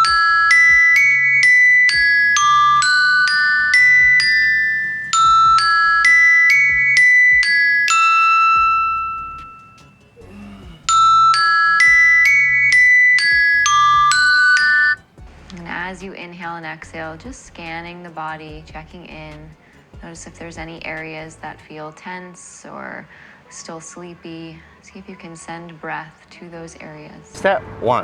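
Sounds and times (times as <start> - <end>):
phone alarm melody: 0.0 - 10.2, 10.9 - 16.0.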